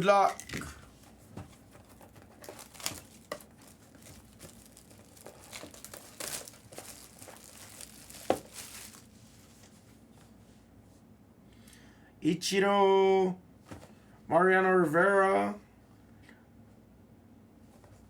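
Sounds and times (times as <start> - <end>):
packaging crinkling and tearing: 2.3 - 9.1.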